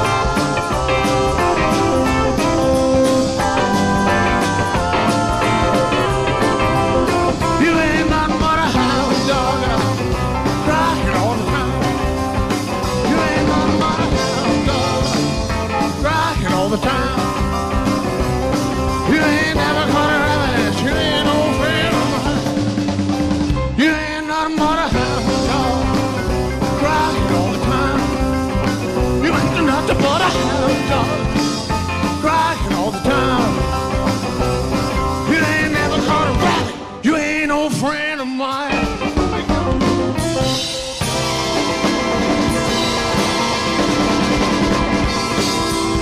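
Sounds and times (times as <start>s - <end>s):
live rock and roll band: 0.0s - 46.0s
horn section: 41.0s - 46.0s.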